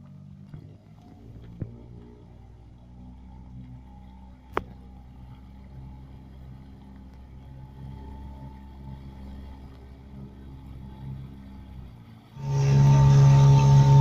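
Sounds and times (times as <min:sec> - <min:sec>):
outboard motor humming: 0:00.0 - 0:14.0.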